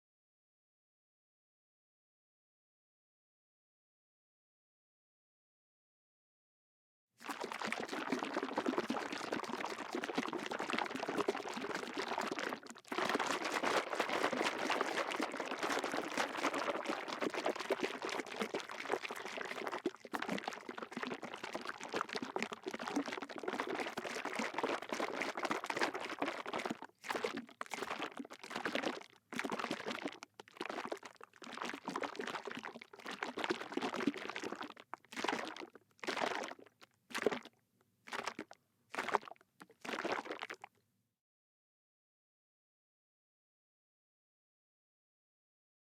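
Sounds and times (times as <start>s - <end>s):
liquid sloshing in a bottle: 7.2s - 40.7s.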